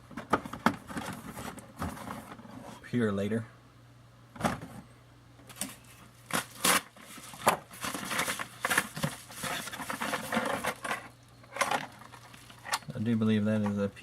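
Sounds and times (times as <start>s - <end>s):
packaging crinkling and tearing: 5.5s - 11.0s.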